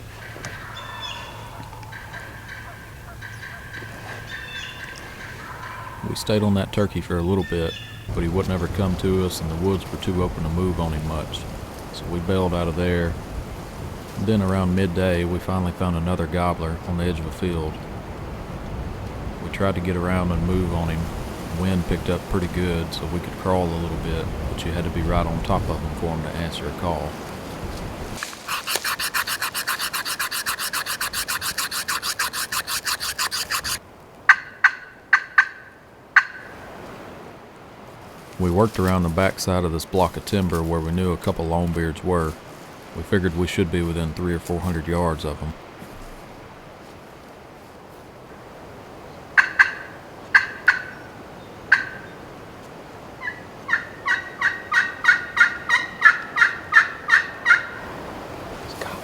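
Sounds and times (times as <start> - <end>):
raspy friction turkey call: 0.1 - 8.2, 28.2 - 35.6, 49.4 - 51.0, 53.2 - 57.9
sharp clucking notes: 28.2 - 35.4.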